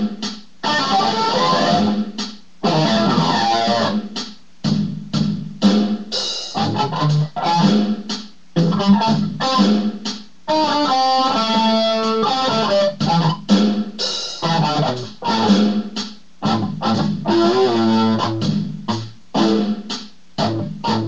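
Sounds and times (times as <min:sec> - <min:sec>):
electric guitar riffs: 0:00.0 - 0:04.1, 0:06.5 - 0:08.0, 0:08.6 - 0:09.9, 0:10.5 - 0:13.8, 0:14.4 - 0:21.0.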